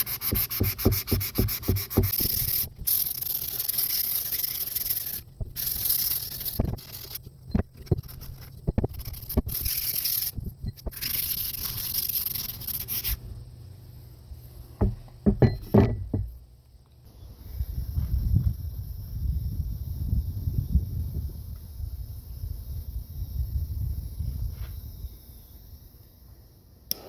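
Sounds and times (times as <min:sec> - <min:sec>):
sandpaper rubbing on wood: 0:00.0 - 0:07.2, 0:07.9 - 0:13.2.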